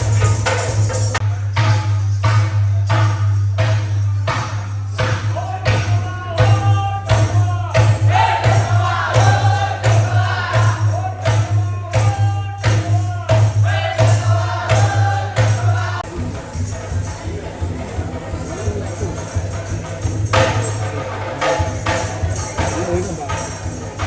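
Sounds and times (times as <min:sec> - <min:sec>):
steady percussion beat: 0:00.0 - 0:24.0
folk singing: 0:05.3 - 0:18.3.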